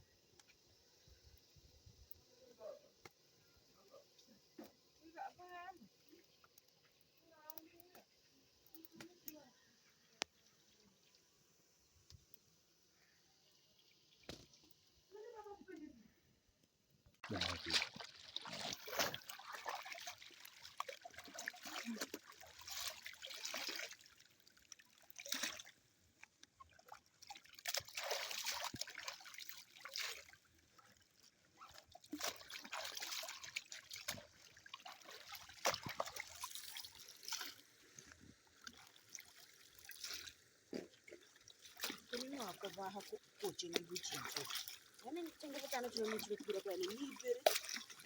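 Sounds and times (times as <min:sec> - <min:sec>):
water trickling and splashing: 0:04.3 - 0:12.4, 0:13.0 - 0:16.0, 0:17.1 - 0:48.0.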